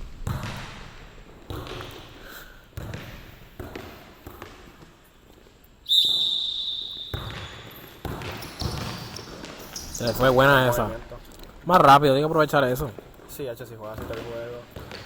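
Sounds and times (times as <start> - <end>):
basketball bouncing on court: 0.0 - 5.5, 6.1 - 11.7, 12.8 - 15.0
whistle blast: 5.8 - 7.7.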